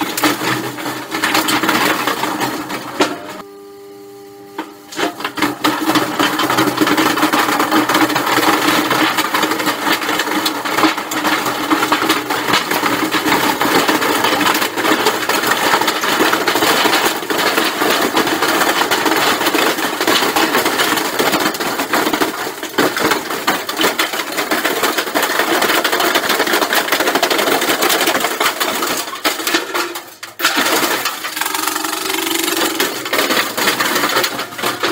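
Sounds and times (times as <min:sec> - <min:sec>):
washing machine rattling: 0:05.1 - 0:34.9.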